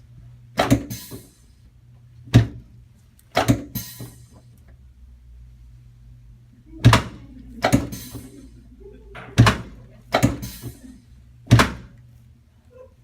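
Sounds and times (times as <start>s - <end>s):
chiropractic table clunks: 2.3s - 2.6s, 3.4s - 4.2s, 6.8s - 8.2s, 9.2s - 10.8s, 11.5s - 12.0s.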